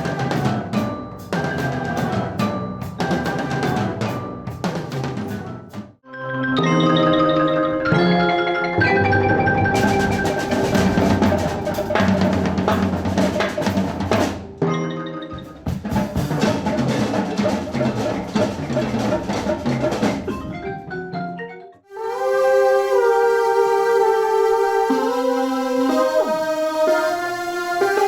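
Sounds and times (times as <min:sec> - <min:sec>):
dense snare drumming: 0:00.0 - 0:06.0, 0:09.8 - 0:14.6, 0:15.5 - 0:20.6
marimba or xylophone: 0:00.0 - 0:26.6
held melodic notes: 0:00.0 - 0:28.0.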